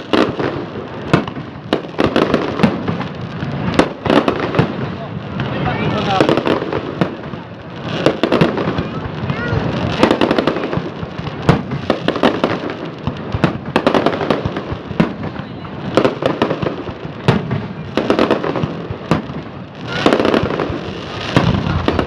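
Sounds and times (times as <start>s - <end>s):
fireworks bangs and crackling: 0.0s - 22.0s.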